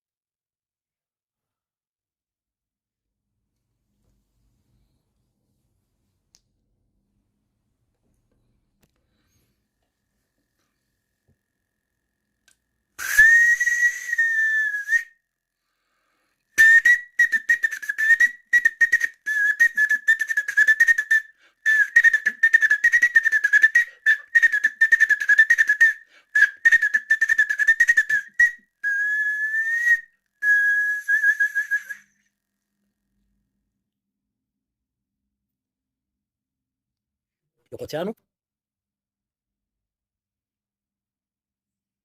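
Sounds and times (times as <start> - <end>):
shrill whistled tune: 13.0 - 15.2, 16.6 - 32.4.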